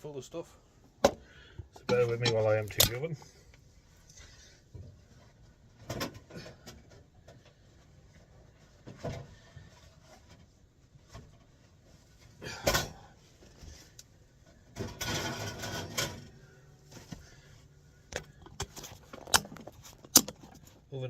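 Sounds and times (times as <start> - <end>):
rattling scrape: 14.8 - 17.4.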